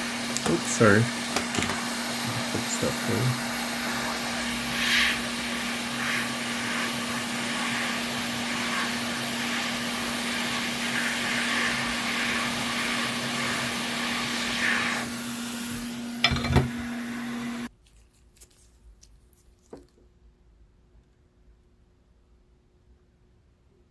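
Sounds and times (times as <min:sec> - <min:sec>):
motor cleaning tool humming: 0:00.0 - 0:17.7.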